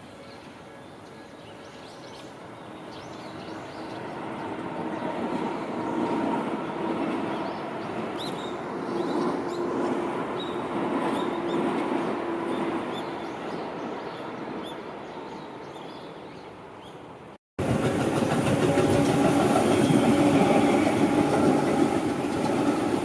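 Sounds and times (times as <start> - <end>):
electric train running noise: 17.6 - 23.0.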